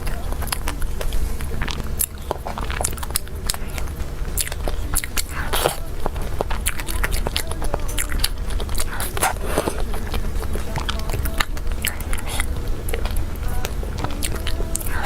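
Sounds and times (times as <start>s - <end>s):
biting and chewing mouth sounds: 0.0s - 15.0s
steady low hum: 0.0s - 15.0s.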